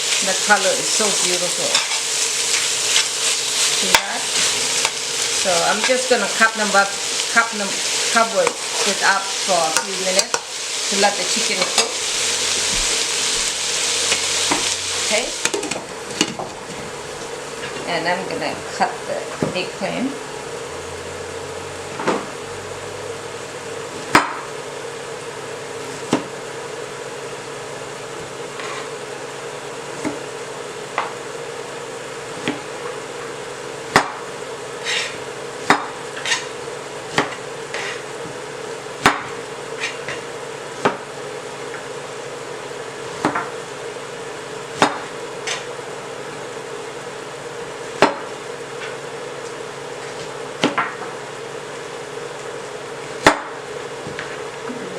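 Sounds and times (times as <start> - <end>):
steady hum: 0.0 - 54.9.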